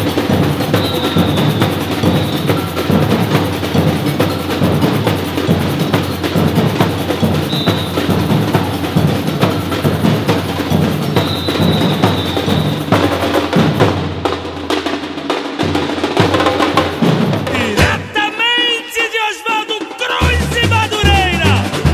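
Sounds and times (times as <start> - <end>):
percussion ensemble playing drums: 0.0 - 21.9.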